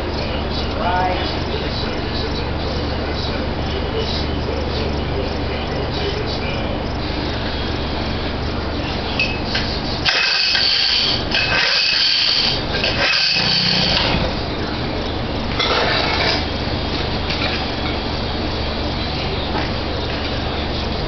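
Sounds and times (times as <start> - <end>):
two-stroke boat motor running: 9.8 - 15.6.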